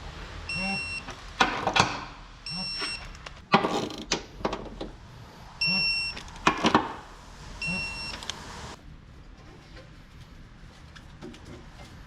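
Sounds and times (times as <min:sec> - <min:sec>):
short high electronic beep: 0:05.6 - 0:06.2, 0:07.6 - 0:08.2.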